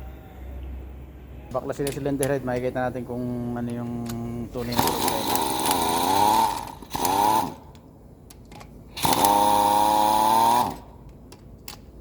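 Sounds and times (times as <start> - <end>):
handheld power tool running: 4.6 - 7.7, 8.9 - 11.0.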